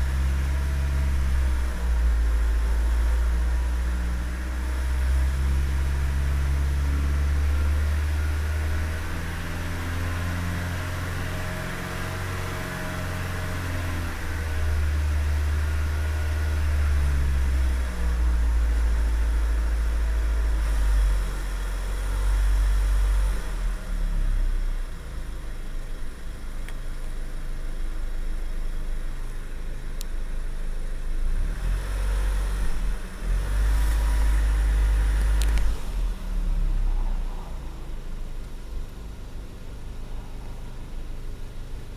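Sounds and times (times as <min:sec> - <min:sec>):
car engine running: 0:32.4 - 0:41.9.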